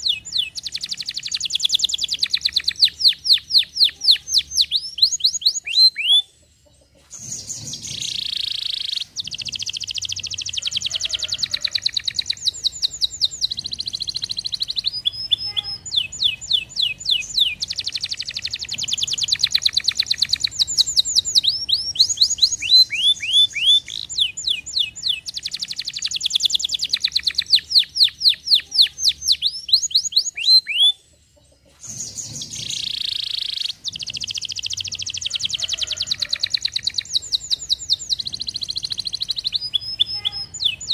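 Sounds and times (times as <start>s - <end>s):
canary singing fast trills: 0.0s - 40.9s.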